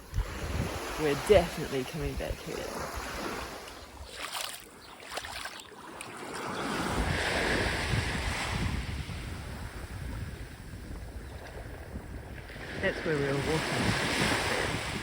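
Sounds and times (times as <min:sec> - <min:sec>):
wind rumbling on microphone: 0:00.0 - 0:05.4, 0:06.2 - 0:15.0
surf washing onto beach: 0:05.9 - 0:15.0.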